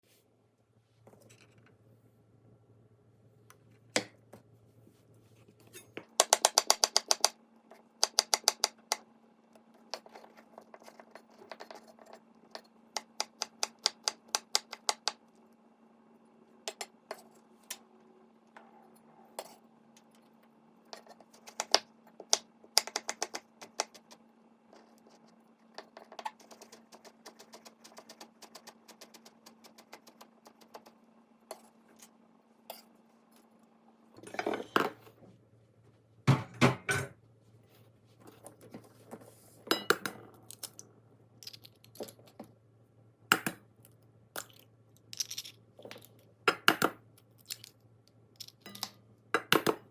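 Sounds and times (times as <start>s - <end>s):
faint steady hum: 0.0s - 49.9s
utensils tapping and clicking: 6.2s - 7.4s, 8.0s - 9.0s.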